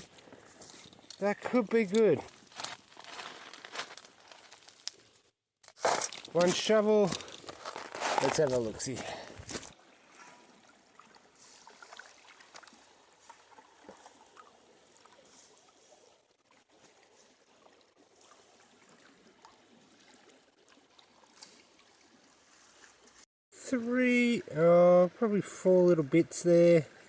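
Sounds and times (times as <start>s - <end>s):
small splashes and clicks: 0.0s - 8.7s, 10.9s - 23.2s
water sloshing and trickling: 0.0s - 23.3s.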